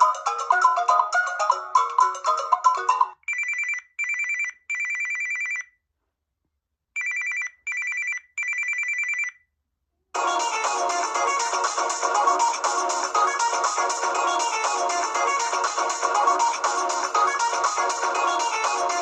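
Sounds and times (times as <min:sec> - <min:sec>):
melodic ringtone: 0:00.0 - 0:05.6, 0:10.2 - 0:19.0
trilling phone ringtone: 0:00.0 - 0:05.7, 0:07.0 - 0:09.4
busy electronic tune: 0:10.2 - 0:19.0.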